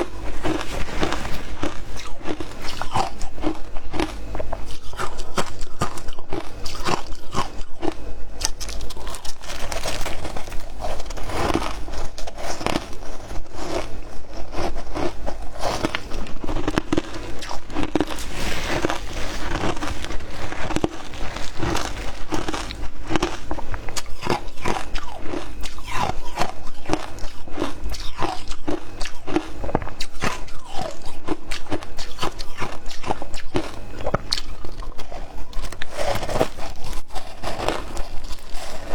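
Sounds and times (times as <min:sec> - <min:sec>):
ice crunching while chewed: 0:00.0 - 0:38.9.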